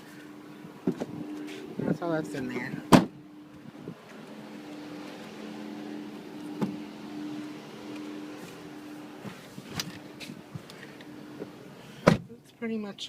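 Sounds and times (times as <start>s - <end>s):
car engine idling: 0.0s - 12.9s.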